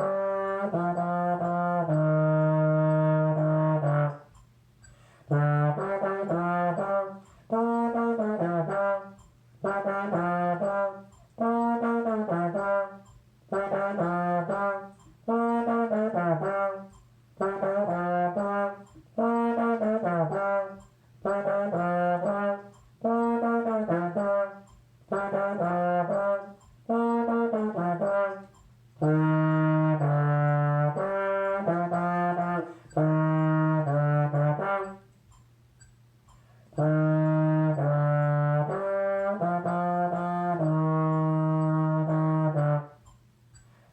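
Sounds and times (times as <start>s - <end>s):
trombone playing: 0.0s - 4.5s, 5.1s - 35.4s, 36.3s - 43.2s
breath: 4.8s - 5.3s, 32.7s - 32.9s, 36.4s - 36.8s, 43.6s - 43.9s.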